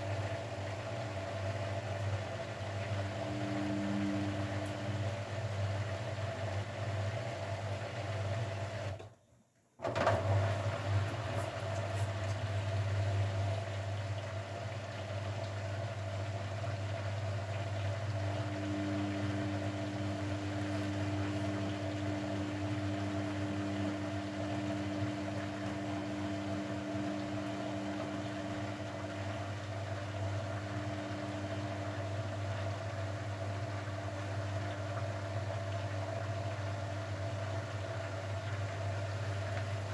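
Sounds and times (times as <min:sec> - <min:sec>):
washing machine motor hum: 0:00.0 - 0:09.2, 0:09.8 - 0:39.9
high motor whine: 0:03.0 - 0:05.4, 0:18.2 - 0:29.3.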